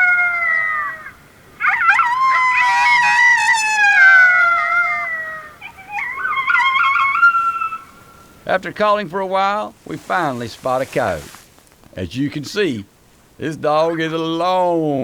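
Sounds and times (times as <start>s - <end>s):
coyote yips: 0.0s - 8.5s, 9.8s - 12.0s
coyotes howling: 0.0s - 11.6s.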